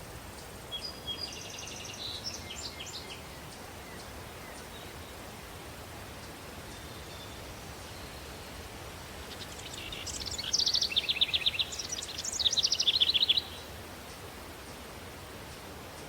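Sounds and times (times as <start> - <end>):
breeze hiss: 0.0 - 16.0
songbird trilling: 9.4 - 13.7.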